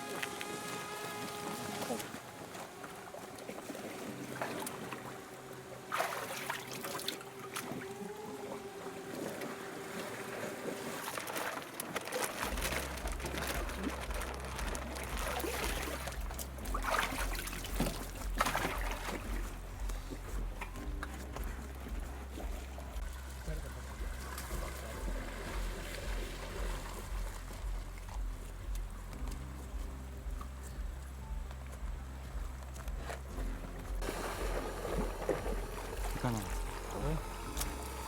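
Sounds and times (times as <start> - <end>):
steady humming tone: 0.0 - 38.0
water splashes: 0.0 - 38.0
water trickling and sloshing: 0.0 - 38.0
low stepped bass pattern: 12.5 - 38.0.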